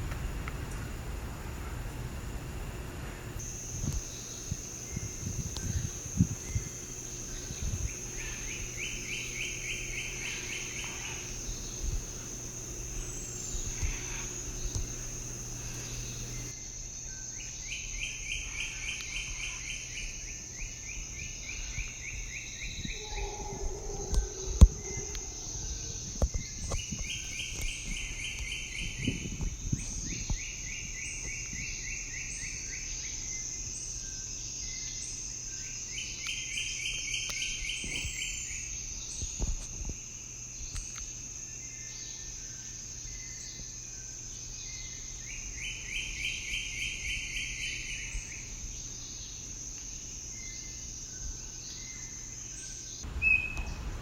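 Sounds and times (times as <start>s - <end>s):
insects droning: 0.0s - 54.0s
bird singing rapid trills: 3.4s - 23.4s, 41.5s - 49.5s.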